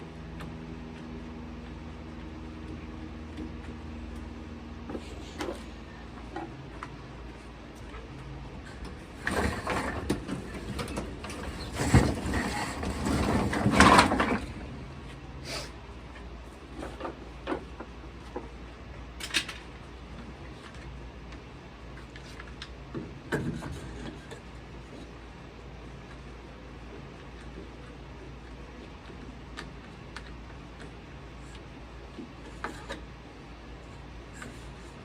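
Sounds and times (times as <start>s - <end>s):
scraping and clattering: 8.6s - 14.8s.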